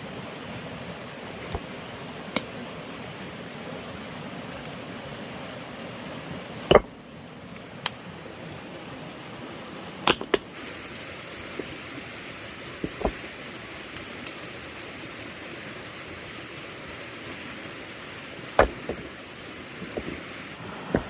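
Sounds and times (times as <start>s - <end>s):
steady hiss: 0.0s - 21.0s
sharp knocks: 18.6s - 19.1s.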